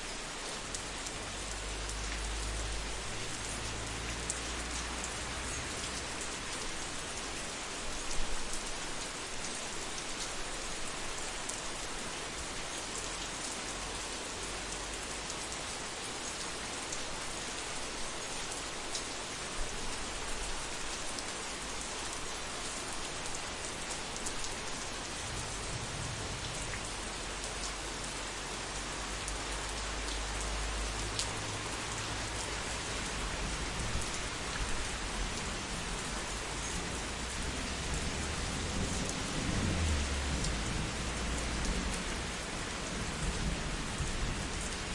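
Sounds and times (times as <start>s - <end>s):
heavy rain falling: 0.0s - 44.9s
low thunder rumble: 37.5s - 41.8s.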